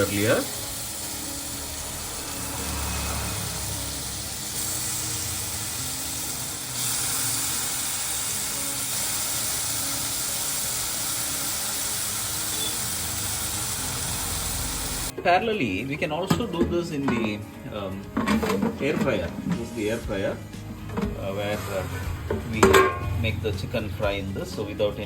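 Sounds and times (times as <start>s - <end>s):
chicken sizzling in a pan: 0.0s - 15.1s.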